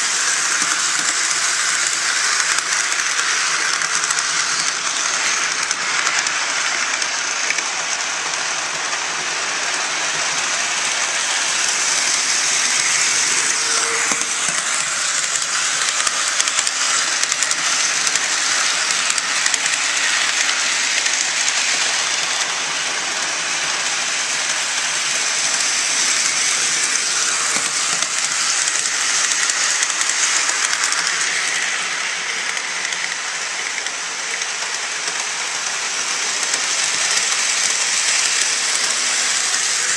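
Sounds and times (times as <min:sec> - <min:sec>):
model train rattling on track: 0:00.0 - 0:39.9.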